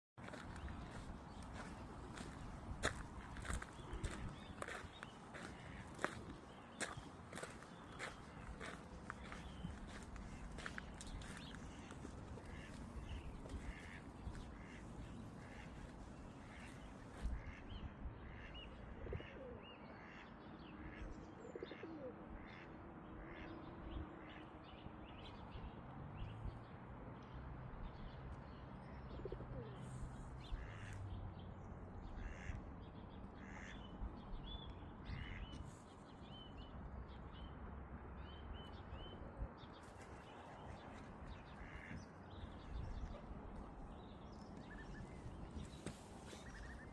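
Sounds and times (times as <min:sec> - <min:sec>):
birds calling: 0:00.2 - 0:20.2, 0:32.1 - 0:33.9, 0:35.0 - 0:36.6, 0:39.8 - 0:46.9.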